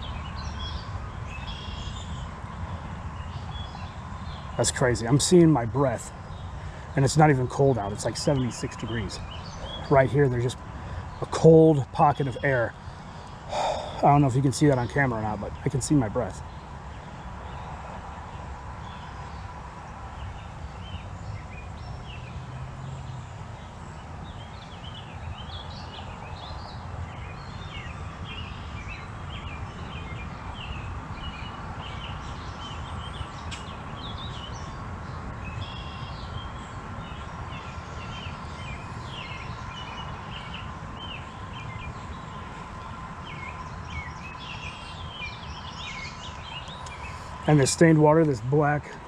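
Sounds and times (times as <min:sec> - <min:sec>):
low background noise: 0:00.0 - 0:49.0
small birds chirping: 0:00.0 - 0:49.0
faint continuous high tone: 0:23.2 - 0:49.0.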